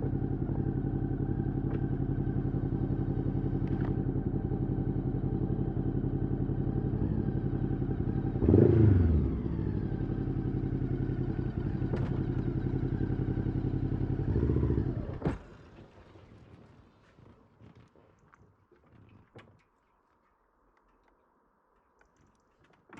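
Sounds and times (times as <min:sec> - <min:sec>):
motorcycle engine running: 0:00.0 - 0:15.4.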